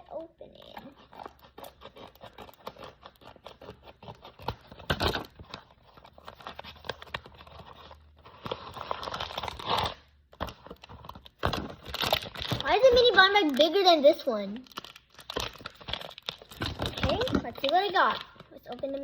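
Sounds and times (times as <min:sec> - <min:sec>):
packaging crinkling: 0:00.5 - 0:19.0
packaging tearing: 0:00.6 - 0:14.0, 0:14.6 - 0:19.0.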